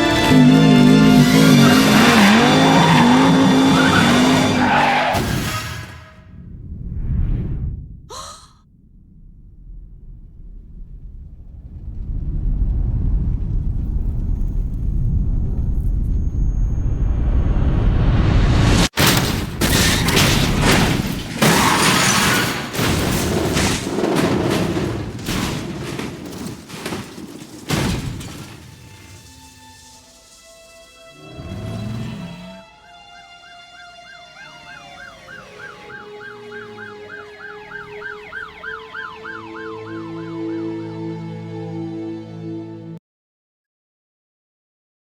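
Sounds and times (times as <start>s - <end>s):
sustained music notes: 0.0s - 4.5s, 29.4s - 43.0s
emergency siren wailing: 0.0s - 5.1s, 30.4s - 42.1s
car crash impacts and shattering: 0.1s - 6.2s, 18.9s - 30.8s.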